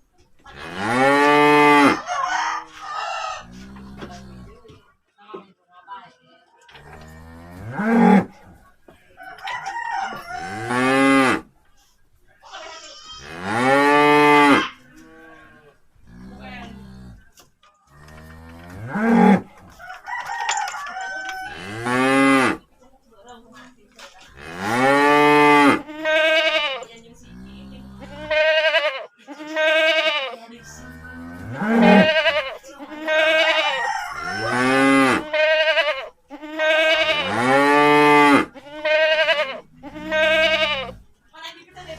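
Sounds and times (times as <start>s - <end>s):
cattle mooing: 0.5s - 2.0s, 13.2s - 17.2s, 21.5s - 22.6s, 24.4s - 28.9s, 30.8s - 41.0s.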